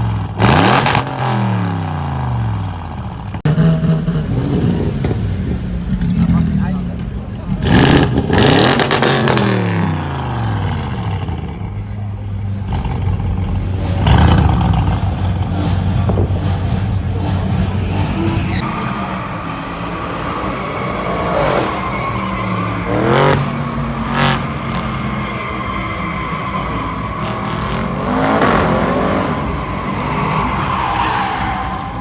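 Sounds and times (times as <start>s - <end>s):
car engine revving: 0.0s - 32.0s
exhaust cracks: 2.8s - 22.2s.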